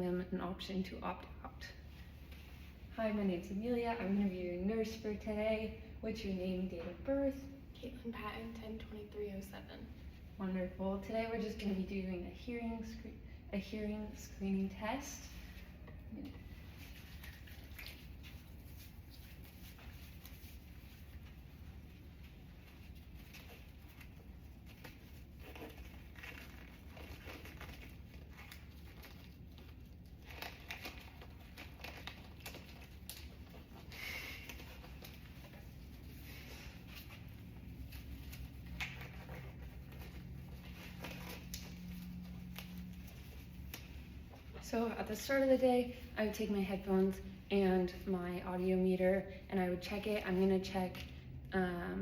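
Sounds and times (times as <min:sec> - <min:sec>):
steady low hum: 0:00.0 - 0:52.0
rustling and crinkling: 0:14.9 - 0:47.4.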